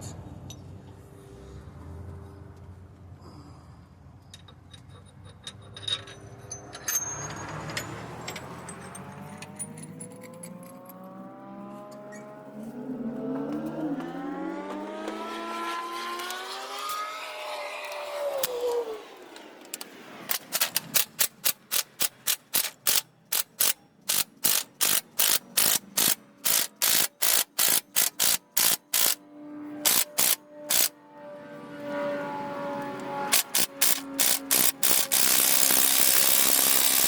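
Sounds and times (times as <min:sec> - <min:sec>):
long rising and falling squeak: 0:06.0 - 0:20.0
ratchet wrench clicking: 0:20.3 - 0:29.2, 0:29.8 - 0:30.9, 0:33.3 - 0:37.0.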